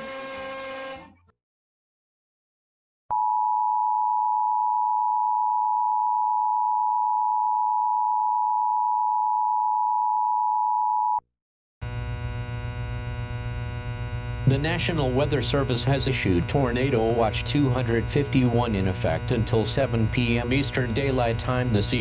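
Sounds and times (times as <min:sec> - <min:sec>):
low buzzing hum: 0:11.8 - 0:22.0
two-tone alarm: 0:11.8 - 0:22.0.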